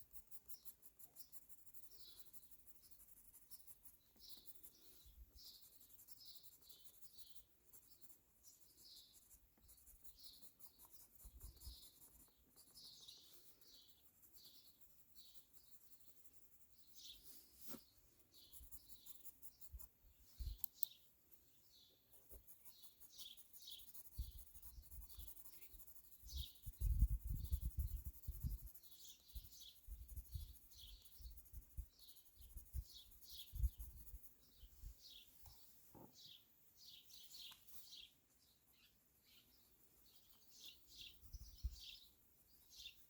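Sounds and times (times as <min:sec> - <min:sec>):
birds chirping: 0:04.0 - 0:25.7.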